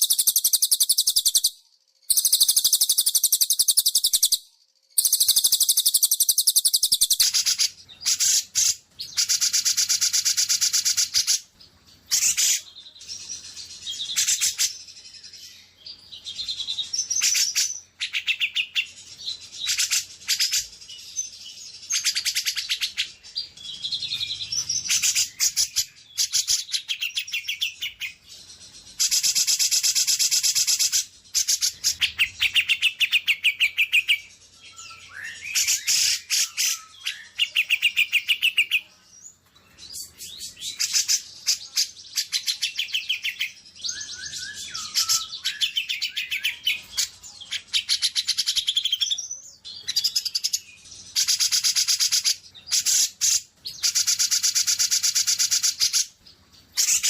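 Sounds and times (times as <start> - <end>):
songbird chattering trills: 2.1 - 4.4, 5.0 - 11.4.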